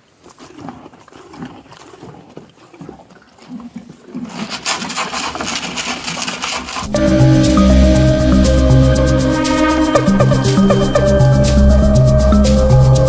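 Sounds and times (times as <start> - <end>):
outdoor noise: 0.0 - 13.0
music with strong bass: 6.9 - 13.0
animal calls: 7.9 - 13.0.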